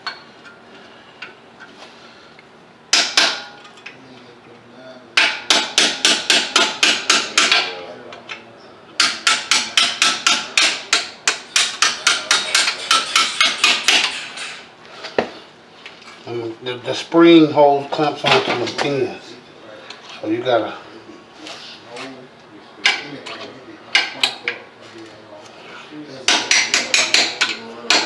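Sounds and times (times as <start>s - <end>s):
hammer tapping on metal: 2.9s - 3.7s, 5.2s - 7.7s, 9.0s - 14.5s, 26.3s - 28.0s.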